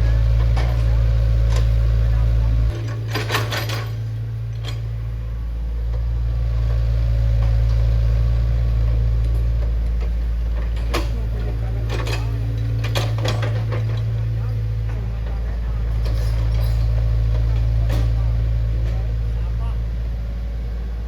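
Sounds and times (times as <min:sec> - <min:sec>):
heavy machine engine drone: 0:00.0 - 0:21.0
metallic clanks rattling: 0:02.7 - 0:05.0.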